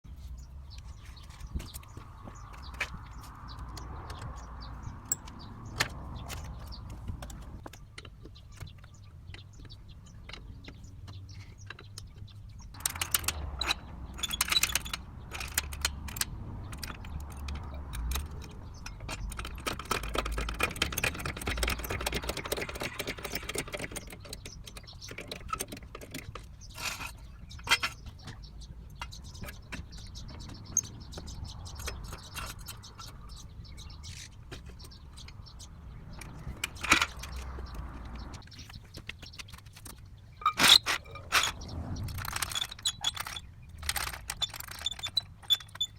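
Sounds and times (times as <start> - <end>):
rapid clicking: 12.8 - 26.2
metal tools clinking and scraping: 39.2 - 45.9.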